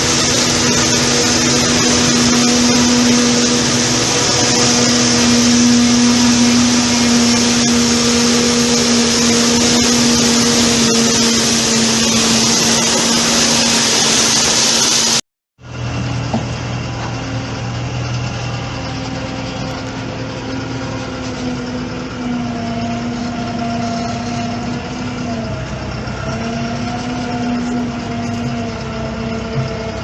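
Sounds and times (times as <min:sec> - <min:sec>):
strong high hiss: 0:00.0 - 0:15.2
harvesting machinery humming: 0:00.0 - 0:30.0.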